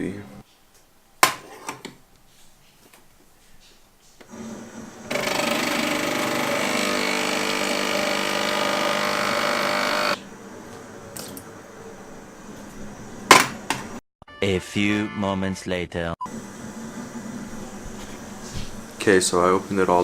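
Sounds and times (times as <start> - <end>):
coffee machine pump buzzing: 4.3 - 10.2.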